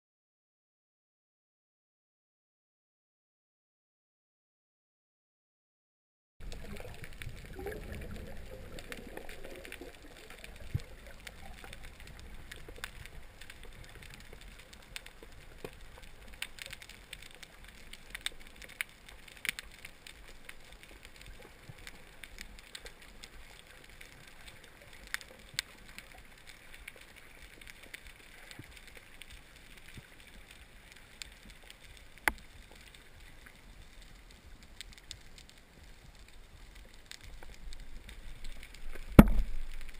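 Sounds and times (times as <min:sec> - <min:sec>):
faint underwater hiss: 0:06.4 - 0:39.9
low water movement: 0:06.4 - 0:39.9
sharp underwater clicks and crackles: 0:06.4 - 0:39.9.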